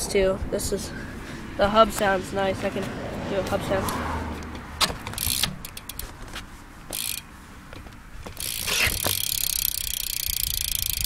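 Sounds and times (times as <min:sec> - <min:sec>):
bicycle hub ticking: 0:05.0 - 0:06.2, 0:06.9 - 0:07.3, 0:08.3 - 0:11.0.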